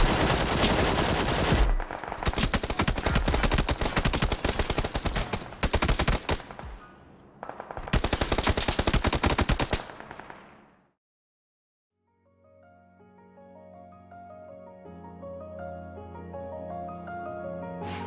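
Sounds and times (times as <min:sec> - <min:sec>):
automatic gunfire: 0:00.0 - 0:06.8, 0:07.4 - 0:10.5.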